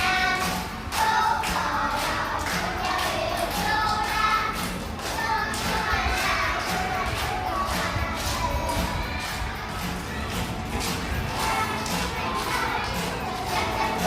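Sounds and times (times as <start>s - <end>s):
backing music with a beat: 0.0s - 14.0s
children singing: 0.0s - 14.0s.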